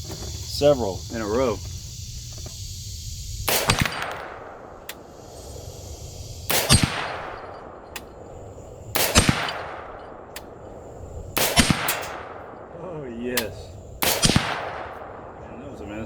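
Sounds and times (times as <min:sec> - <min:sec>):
rifle shots: 0:03.4 - 0:05.6, 0:06.4 - 0:15.9
bullet hitting steel target: 0:03.5 - 0:05.1, 0:06.5 - 0:08.2, 0:09.0 - 0:10.6, 0:11.4 - 0:12.5, 0:13.3 - 0:15.0.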